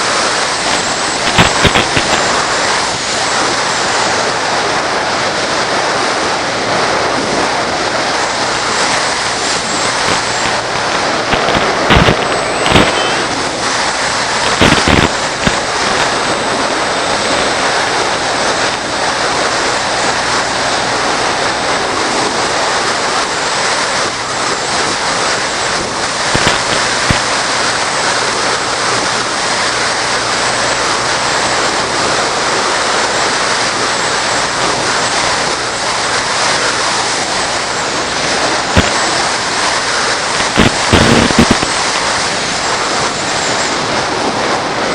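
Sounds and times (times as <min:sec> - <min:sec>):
loud rushing noise: 0:00.0 - 0:44.9
brief crackles: 0:00.6 - 0:03.0, 0:08.5 - 0:16.4, 0:26.3 - 0:27.3, 0:38.2 - 0:42.2.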